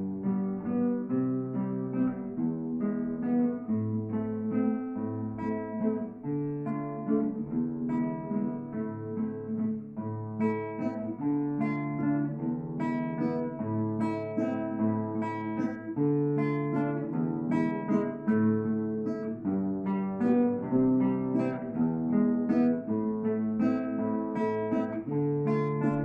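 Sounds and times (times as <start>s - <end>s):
plucked string melody: 0.0s - 26.0s.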